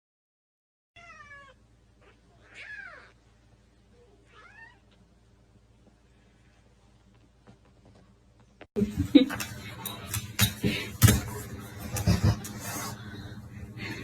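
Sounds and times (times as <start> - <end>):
cat meowing: 1.0 - 3.2, 4.2 - 5.0.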